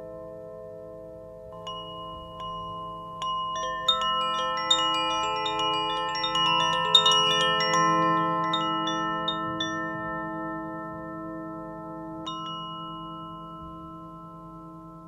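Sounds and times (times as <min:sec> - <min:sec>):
wind chime tinkling: 0:01.5 - 0:15.0.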